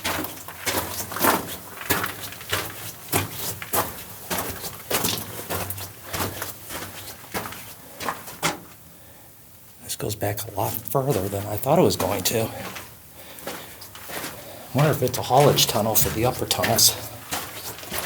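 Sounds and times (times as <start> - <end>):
footsteps crunching on gravel: 10.7 - 18.0.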